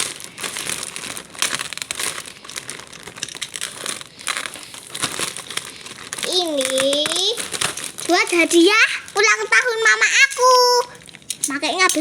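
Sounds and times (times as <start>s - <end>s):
packaging crinkling: 0.0s - 12.0s.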